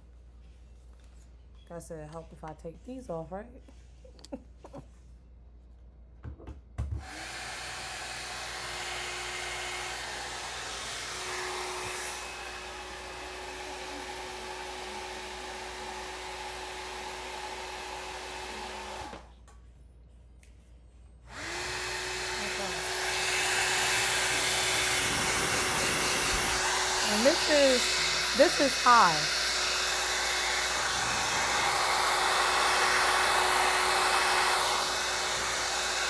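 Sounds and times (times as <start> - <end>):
hair dryer running: 7.0 - 19.3, 21.3 - 36.0.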